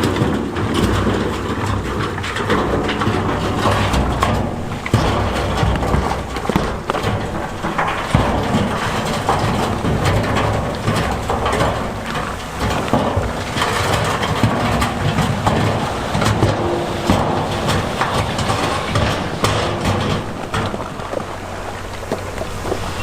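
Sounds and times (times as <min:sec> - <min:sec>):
diesel earthmoving machinery running: 0:00.0 - 0:23.0
stones clattering and knocking: 0:00.0 - 0:23.0.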